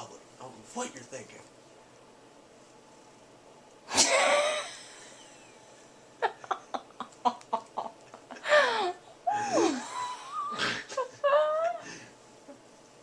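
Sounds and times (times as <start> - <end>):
person whining cries: 8.5 - 11.8.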